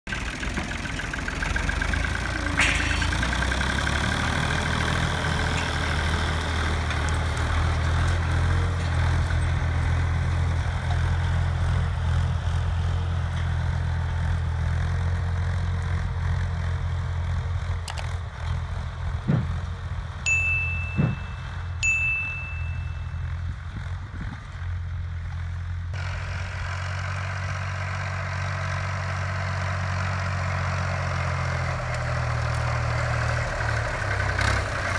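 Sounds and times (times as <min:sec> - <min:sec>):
tractor engine running: 0:00.1 - 0:34.9
high-pitched ding: 0:20.3 - 0:23.3.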